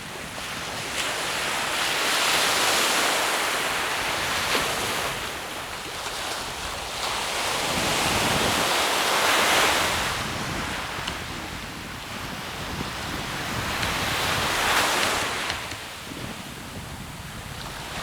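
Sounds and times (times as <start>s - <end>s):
ocean waves breaking on beach: 0.0s - 18.0s
wind buffeting microphone: 3.7s - 18.0s.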